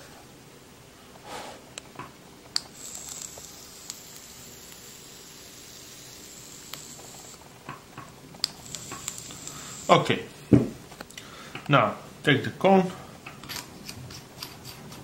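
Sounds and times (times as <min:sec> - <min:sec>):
faint sizzling hiss of coil: 0:00.0 - 0:15.0
small sharp clicks: 0:08.4 - 0:09.6.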